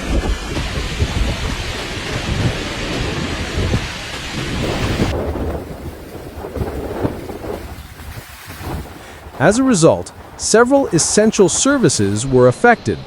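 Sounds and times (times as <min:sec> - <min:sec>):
heavy rain hissing: 0:00.0 - 0:12.9
low storm rumble: 0:00.0 - 0:13.0.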